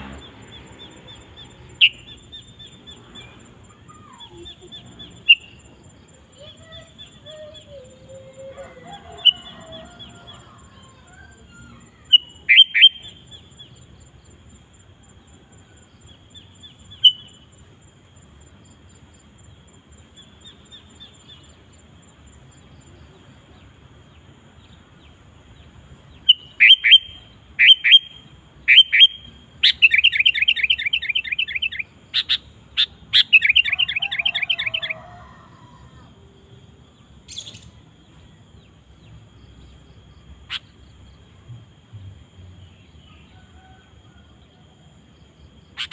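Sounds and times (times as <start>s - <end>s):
bird calling: 0.0s - 13.7s, 26.2s - 36.1s, 40.4s - 40.8s.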